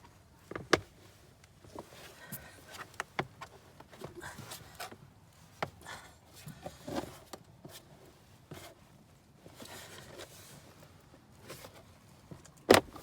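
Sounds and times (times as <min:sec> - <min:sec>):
soft rustle: 0:00.0 - 0:13.0
hard plastic clicking and creaking: 0:00.4 - 0:01.6, 0:12.4 - 0:13.0.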